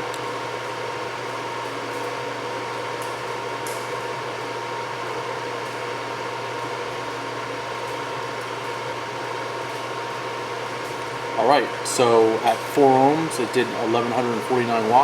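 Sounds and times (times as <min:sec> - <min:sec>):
dyno test bench whirring: 0:08.9 - 0:15.0.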